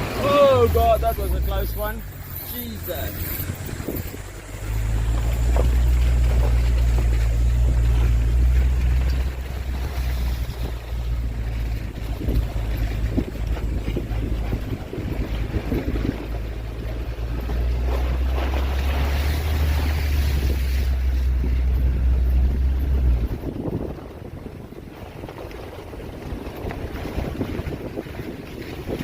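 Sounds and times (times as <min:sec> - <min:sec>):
engine humming: 0:00.0 - 0:29.0
rushing water and wind: 0:00.0 - 0:29.0.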